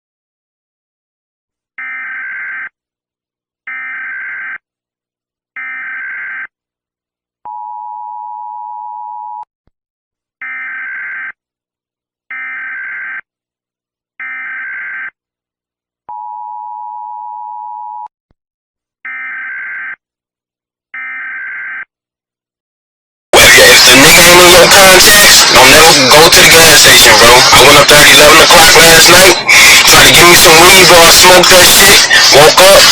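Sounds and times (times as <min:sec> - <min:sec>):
digital data bursts: 0:23.4 - 0:32.9.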